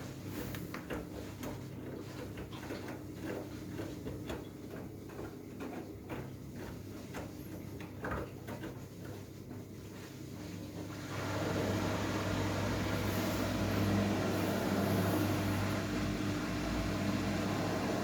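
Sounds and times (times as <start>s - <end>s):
washing machine motor hum: 0.0s - 18.0s.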